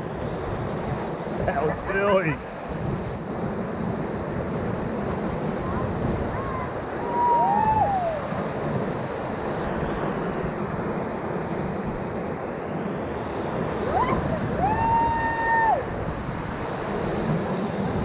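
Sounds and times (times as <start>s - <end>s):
river rapids rushing: 0.0s - 18.0s
high whooping calls: 6.3s - 8.3s.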